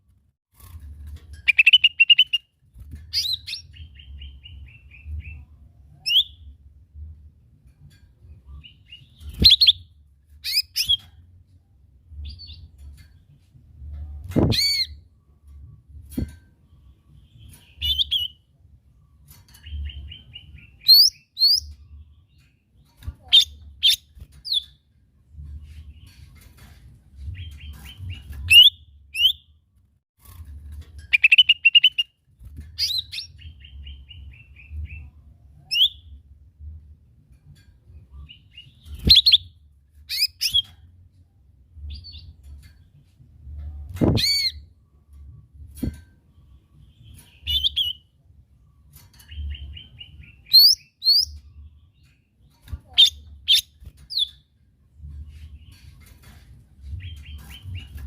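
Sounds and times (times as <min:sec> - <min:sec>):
bird singing chirps and trills: 0:01.4 - 0:02.5, 0:19.6 - 0:24.8, 0:31.0 - 0:32.1, 0:38.0 - 0:40.7, 0:46.5 - 0:48.2, 0:49.2 - 0:54.5.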